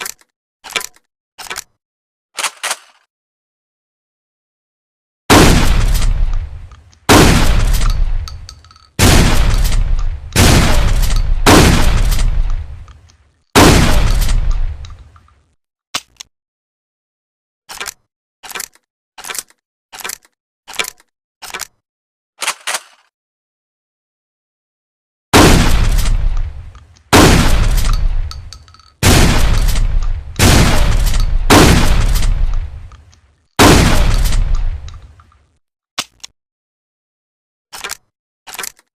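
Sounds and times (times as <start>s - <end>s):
shotgun blasts with echo: 5.3s - 8.4s, 9.0s - 12.9s, 13.6s - 14.9s, 25.4s - 33.0s, 33.6s - 35.1s.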